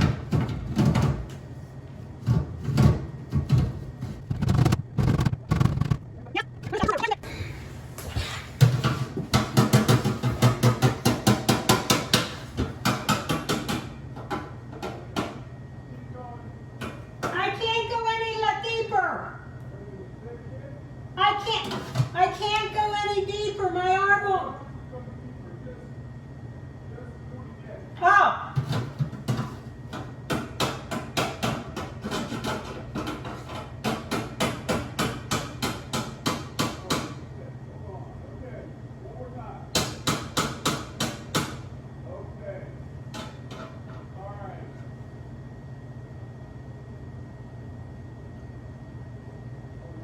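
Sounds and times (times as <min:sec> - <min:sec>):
hammering on a wall: 0:09.3 - 0:14.4, 0:29.9 - 0:33.2, 0:33.8 - 0:37.2, 0:39.7 - 0:41.6.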